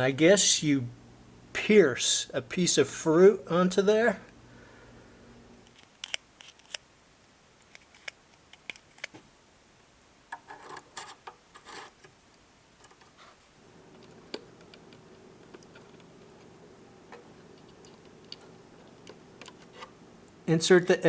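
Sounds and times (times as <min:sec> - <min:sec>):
plastic parts clicking and tapping: 0:07.6 - 0:09.2
rustling and scraping: 0:10.3 - 0:12.1, 0:12.8 - 0:14.1, 0:17.1 - 0:20.0.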